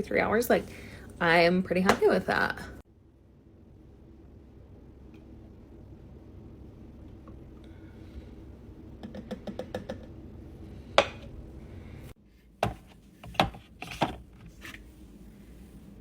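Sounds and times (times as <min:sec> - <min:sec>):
background hum: 0:00.0 - 0:16.0.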